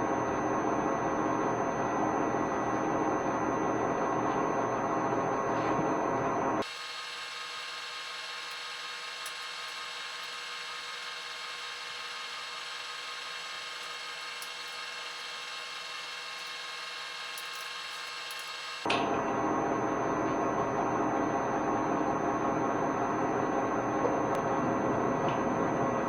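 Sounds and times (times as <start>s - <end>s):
mechanical whir with high hiss: 6.6s - 18.9s.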